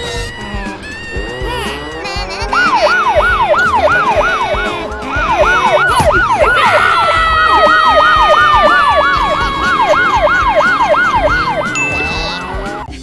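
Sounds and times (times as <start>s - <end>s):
police siren yelping: 0.3s - 13.0s
long held siren tone sliding down: 2.6s - 13.0s.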